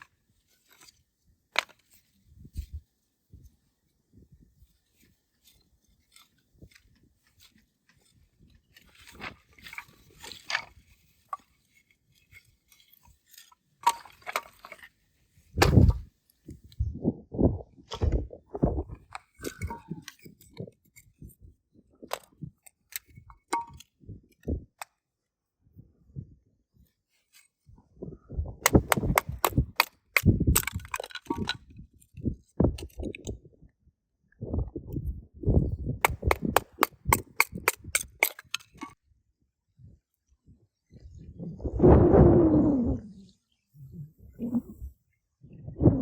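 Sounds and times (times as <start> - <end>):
crunching and clinking: 5.0 - 15.0, 28.6 - 31.7, 36.0 - 39.0.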